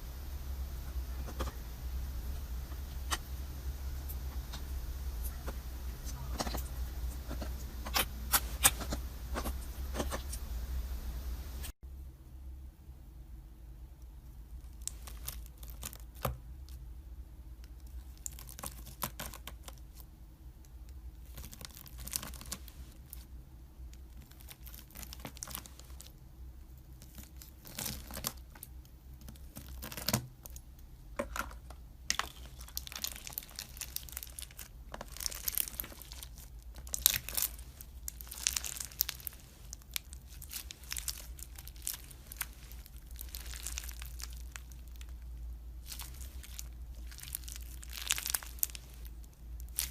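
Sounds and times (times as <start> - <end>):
slime crackling and tearing: 14.6 - 16.8, 17.7 - 20.0, 21.2 - 23.3, 24.0 - 26.2, 26.9 - 30.7, 32.1 - 49.9.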